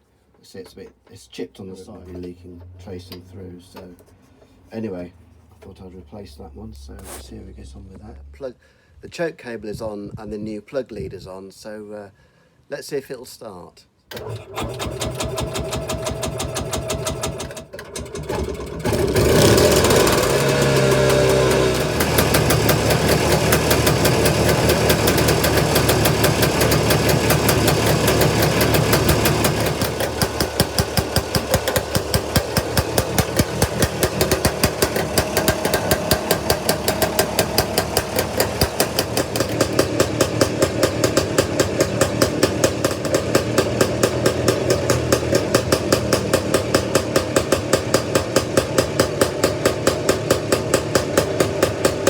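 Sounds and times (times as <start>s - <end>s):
two-stroke engine idling: 14.2s - 52.0s.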